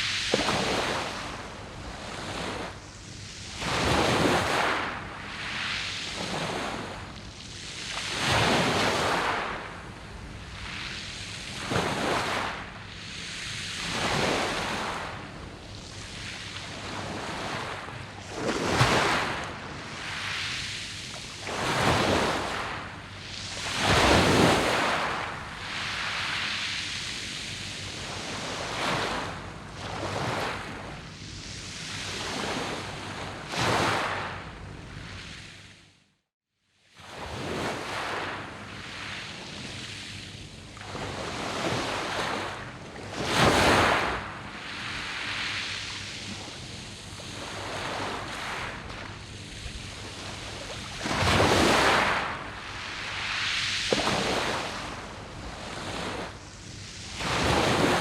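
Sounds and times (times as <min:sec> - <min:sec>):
waves breaking on pebbles: 0:03.5 - 0:07.0, 0:07.9 - 0:12.7, 0:13.6 - 0:26.8, 0:40.9 - 0:58.0.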